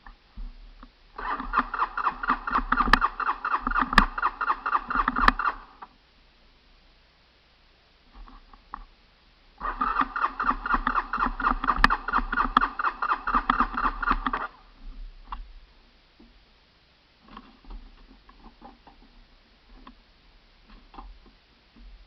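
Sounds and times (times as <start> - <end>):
faint clicks and knocks: 0.0 - 1.0, 8.1 - 9.0, 13.3 - 15.6, 17.2 - 22.0
engine cranking over by starter: 1.2 - 5.7, 9.6 - 14.6.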